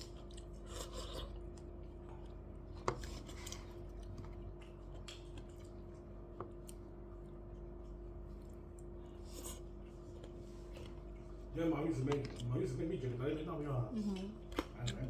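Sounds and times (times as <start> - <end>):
steady low hum: 0.0 - 15.0
clicks and taps of eating: 4.0 - 6.8, 12.0 - 12.5.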